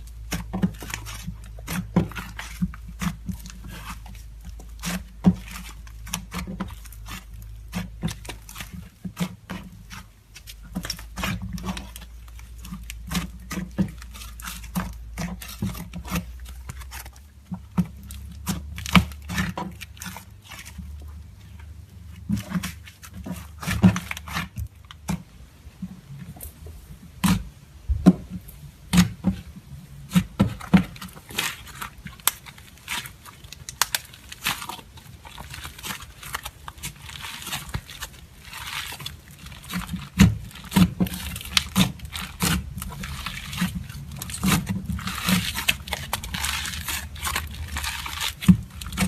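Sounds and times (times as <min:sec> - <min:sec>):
slime squished by hand: 0:27.2 - 0:49.0.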